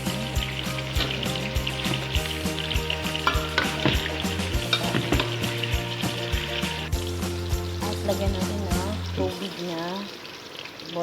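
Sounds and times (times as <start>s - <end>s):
food sizzling in hot oil: 0.0s - 11.0s
spatula knocking against pan: 3.2s - 5.8s.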